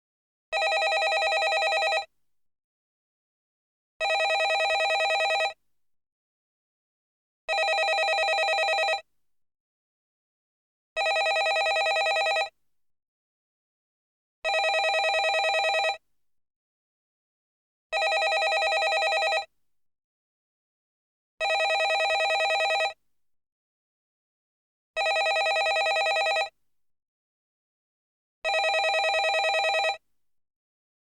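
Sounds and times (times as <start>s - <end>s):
telephone ringing: 0.6s - 2.1s, 4.0s - 5.6s, 7.5s - 9.0s, 11.0s - 12.5s, 14.5s - 16.0s, 18.0s - 19.5s, 21.4s - 23.0s, 25.0s - 26.5s, 28.5s - 30.0s.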